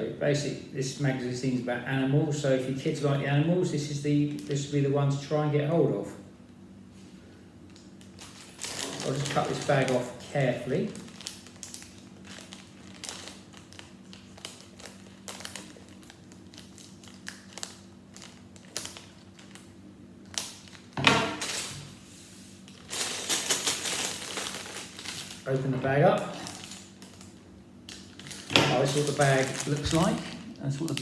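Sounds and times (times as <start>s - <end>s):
plastic bag crinkling: 7.7s - 31.0s.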